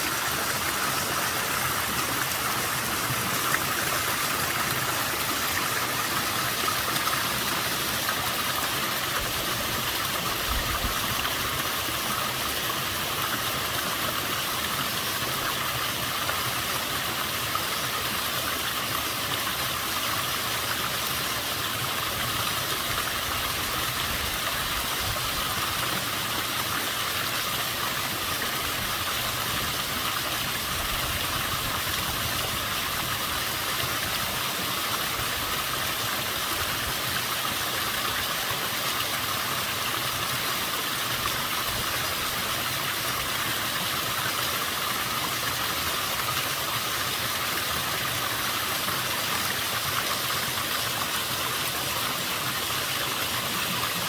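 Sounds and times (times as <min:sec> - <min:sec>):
waterfall rushing: 0:00.0 - 0:10.4.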